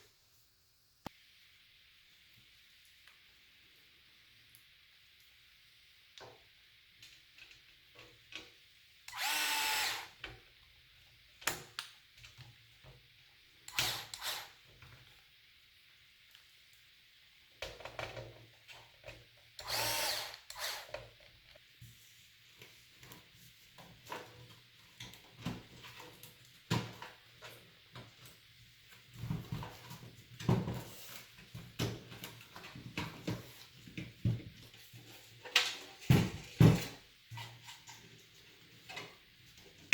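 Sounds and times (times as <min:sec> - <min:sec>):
drill-driver whirring: 0:09.1 - 0:10.2, 0:13.7 - 0:14.6, 0:19.6 - 0:20.9.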